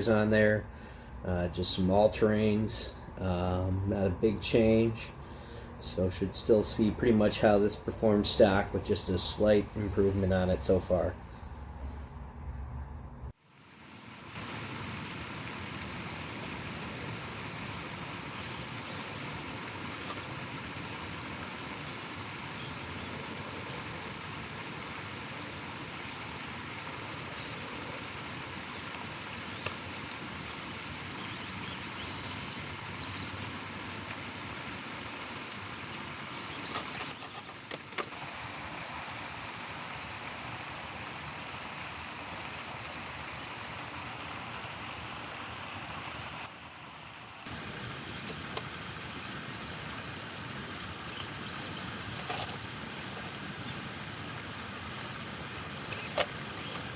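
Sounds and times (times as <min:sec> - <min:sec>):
constant hiss: 0:00.0 - 0:56.9
small electric motor whining: 0:17.9 - 0:40.6, 0:47.4 - 0:56.9
sharp clicks and scrapes: 0:35.9 - 0:38.2, 0:51.1 - 0:53.9, 0:55.8 - 0:56.9.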